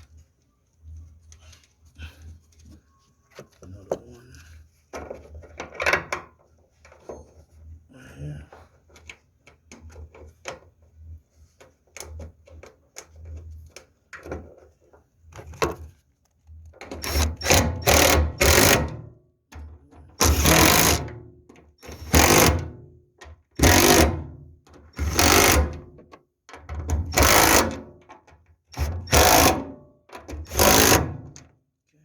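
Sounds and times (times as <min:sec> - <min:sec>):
power tool bursts: 0:17.0 - 0:18.9, 0:20.2 - 0:21.1, 0:21.8 - 0:22.6, 0:23.6 - 0:24.2, 0:25.0 - 0:25.7, 0:27.1 - 0:27.8, 0:28.8 - 0:29.7, 0:30.4 - 0:31.2.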